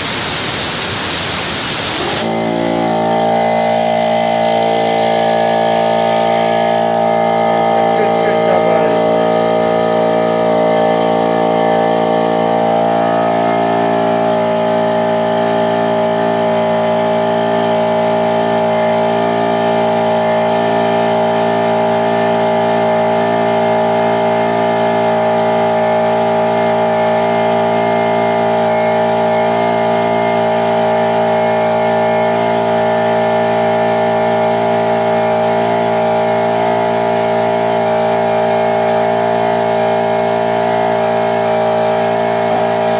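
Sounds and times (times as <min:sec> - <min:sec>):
air compressor humming: 0:00.0 - 0:27.8.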